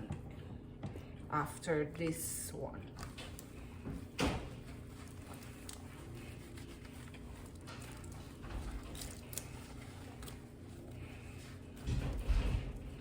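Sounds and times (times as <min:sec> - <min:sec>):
wet squishing of shampoo: 0:03.0 - 0:13.0.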